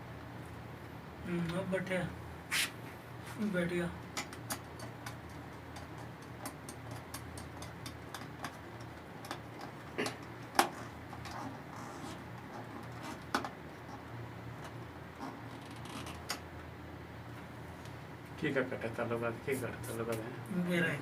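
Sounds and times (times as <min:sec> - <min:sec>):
sharp clicks and light taps: 0:04.1 - 0:10.8.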